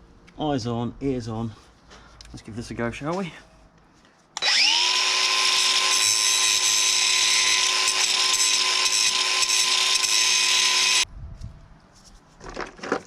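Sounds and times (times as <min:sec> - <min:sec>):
grinder whining on metal: 0:04.4 - 0:11.0.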